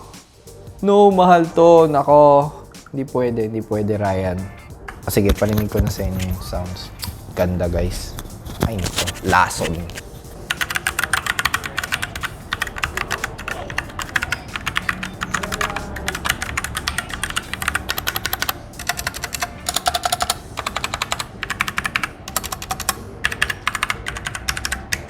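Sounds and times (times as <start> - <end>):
mechanical keyboard typing: 8.1 - 25.0.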